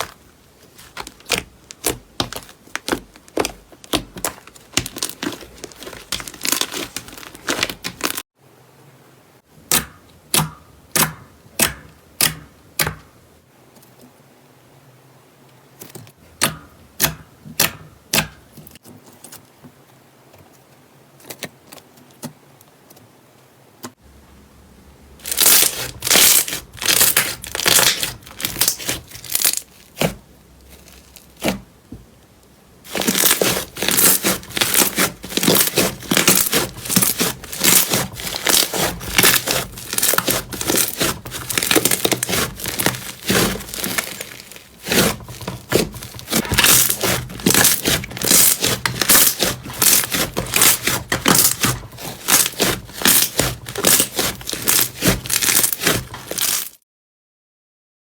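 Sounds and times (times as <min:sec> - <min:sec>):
slime crackling and popping: 0:00.8 - 0:08.3, 0:25.2 - 0:31.6, 0:32.9 - 0:56.8.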